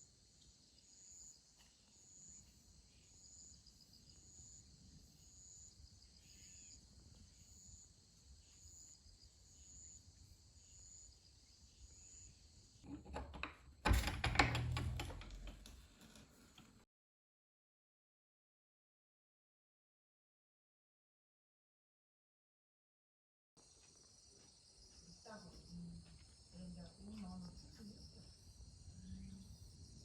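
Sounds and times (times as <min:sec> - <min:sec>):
insects chirping: 0:00.0 - 0:12.8, 0:23.6 - 0:30.0.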